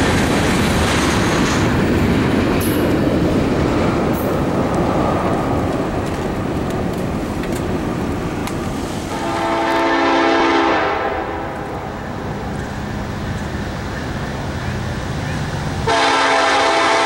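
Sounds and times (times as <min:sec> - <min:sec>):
freight train rumbling on rails: 0:00.0 - 0:17.0
locomotive air horn: 0:09.1 - 0:11.6, 0:15.8 - 0:17.0.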